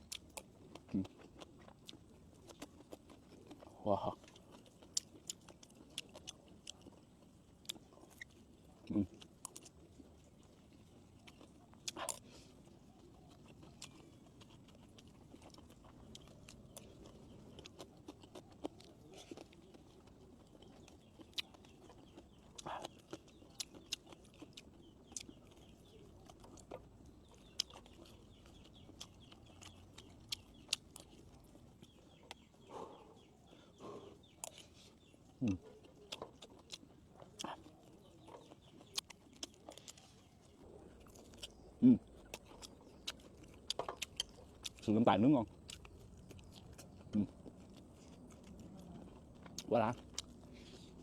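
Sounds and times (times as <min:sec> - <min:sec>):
soft chewing: 0:00.0 - 0:51.0
faint chickens calling: 0:11.3 - 0:51.0.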